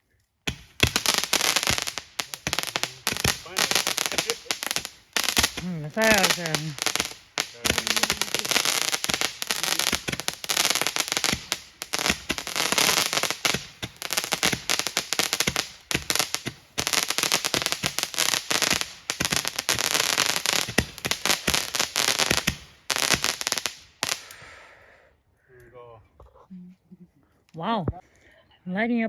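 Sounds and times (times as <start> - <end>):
fireworks crackling: 0.5 - 24.5.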